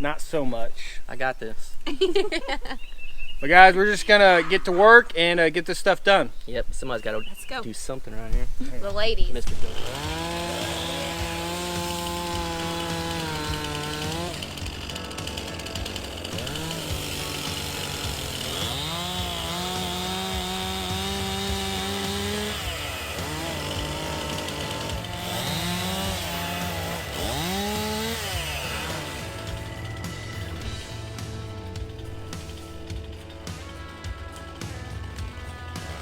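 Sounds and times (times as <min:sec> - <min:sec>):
music: 0:08.8 - 0:36.0
chainsaw engine revving: 0:09.4 - 0:36.0.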